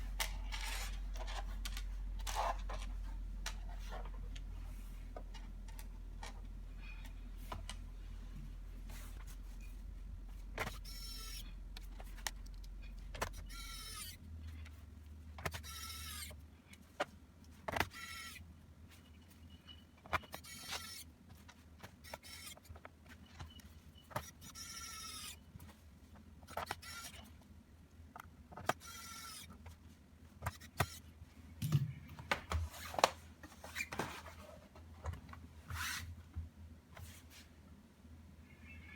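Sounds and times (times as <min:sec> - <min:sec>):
small electric motor whirring: 0:10.7 - 0:11.5, 0:13.3 - 0:14.2, 0:15.5 - 0:16.4, 0:17.8 - 0:18.4, 0:20.3 - 0:21.0, 0:22.0 - 0:22.7, 0:24.3 - 0:25.4, 0:28.6 - 0:29.6.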